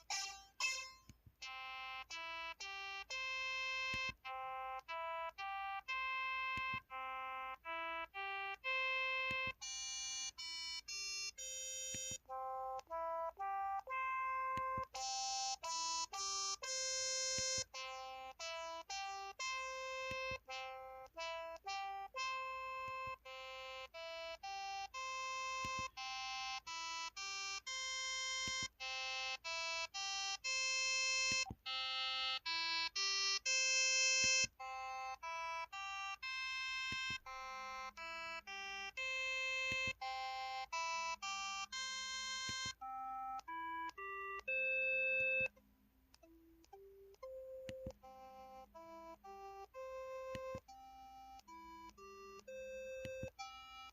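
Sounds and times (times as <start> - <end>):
phone keypad beeps: 5.6 - 21.1, 22.4 - 45.6, 46.2 - 53.9.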